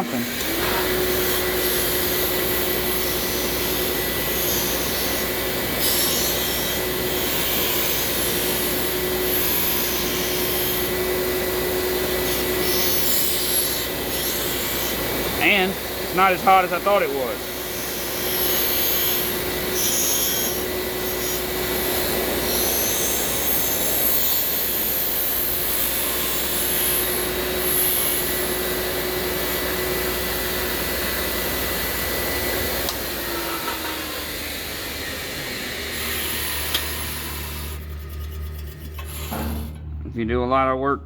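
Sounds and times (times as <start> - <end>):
bench grinder grinding steel: 0.0 - 39.8
grinder motor spinning down: 26.6 - 39.7.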